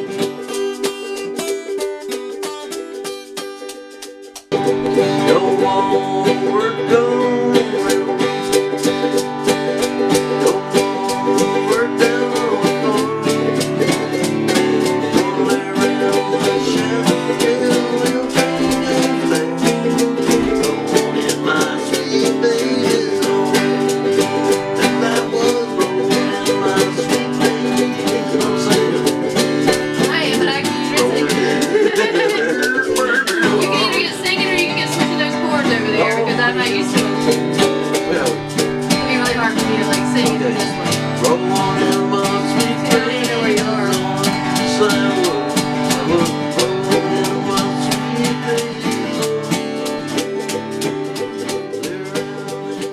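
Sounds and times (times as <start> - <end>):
band playing plucked strings: 0.0 - 52.9.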